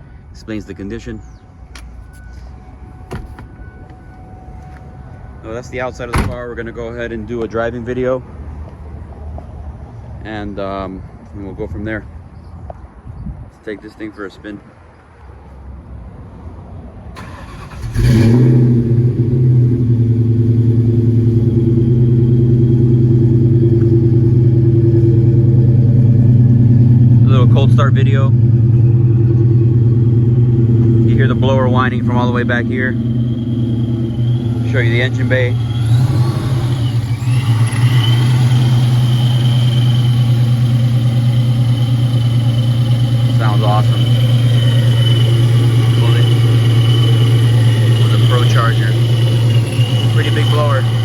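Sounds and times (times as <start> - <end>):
car engine starting and idling: 0.6 - 8.1, 17.2 - 51.0
supercharger whine: 17.2 - 51.0.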